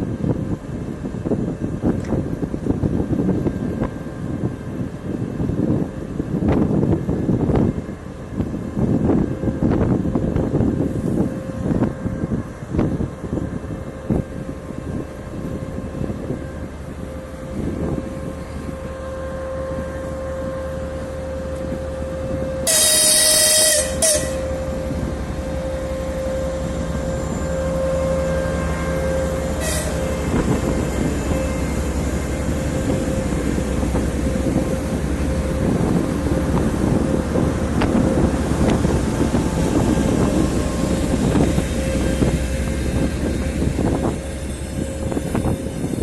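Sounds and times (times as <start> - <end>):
diesel locomotive whine: 0.0 - 46.0
train rumble and clatter: 0.0 - 46.0
train horn blast: 13.4 - 46.0.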